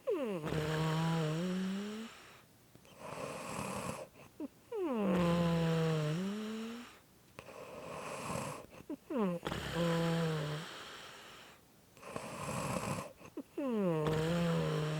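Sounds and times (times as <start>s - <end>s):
squeaky snoring: 0.0s - 2.2s, 2.9s - 11.2s, 12.0s - 14.9s.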